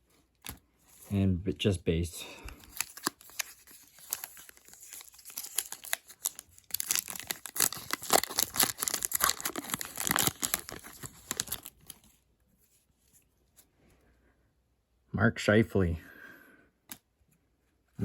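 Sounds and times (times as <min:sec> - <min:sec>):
wrapper tearing and crinkling: 0:02.6 - 0:12.1.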